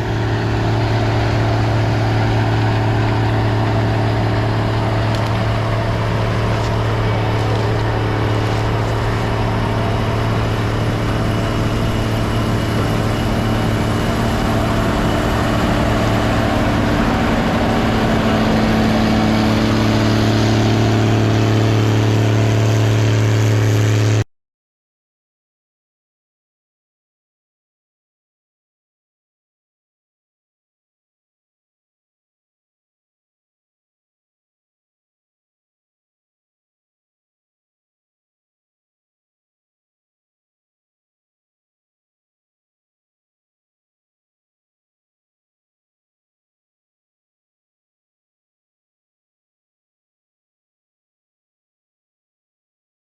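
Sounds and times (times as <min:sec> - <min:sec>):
diesel engine droning: 0:00.0 - 0:24.2.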